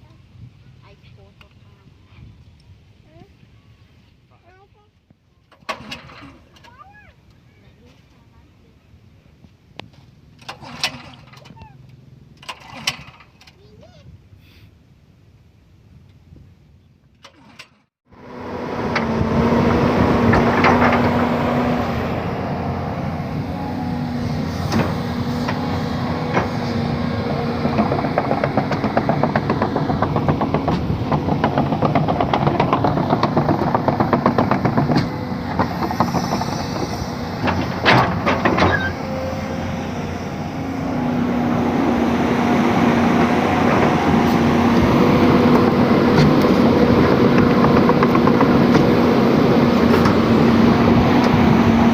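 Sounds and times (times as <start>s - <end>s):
excavator engine clattering: 5.5s - 7.0s, 10.3s - 13.9s, 17.2s - 51.9s.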